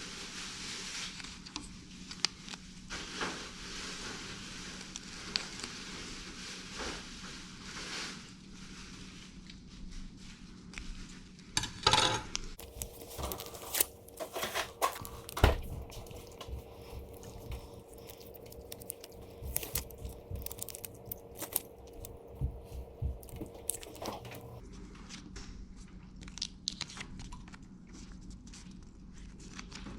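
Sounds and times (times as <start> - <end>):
paper crinkling and tearing: 12.6 - 25.3, 26.2 - 29.9.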